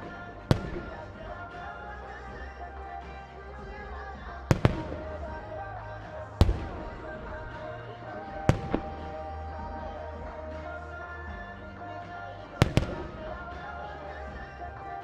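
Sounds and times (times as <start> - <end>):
fireworks bursting with booms: 0.0 - 1.8, 4.5 - 10.0, 12.6 - 13.8
pop song with vocals: 0.0 - 15.0.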